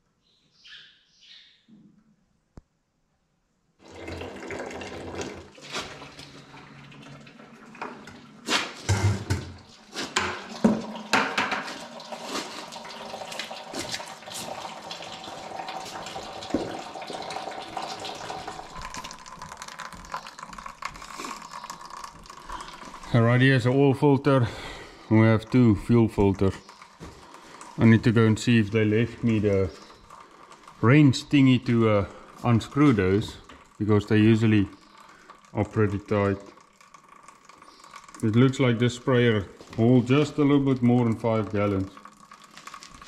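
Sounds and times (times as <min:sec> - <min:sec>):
liquid running and splashing: 0:03.8 - 0:43.0
knocks and clatter: 0:08.8 - 0:11.9.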